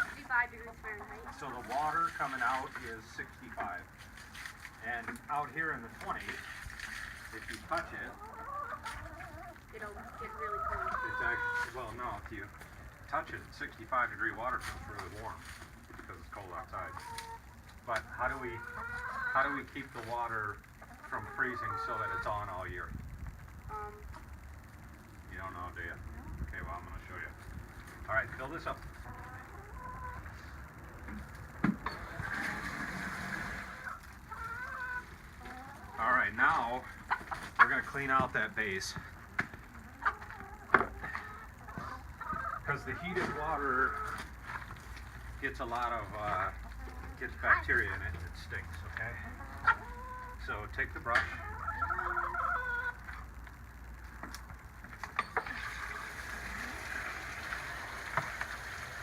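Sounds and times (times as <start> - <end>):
hose water hissing: 32.1 - 33.9, 55.4 - 59.0.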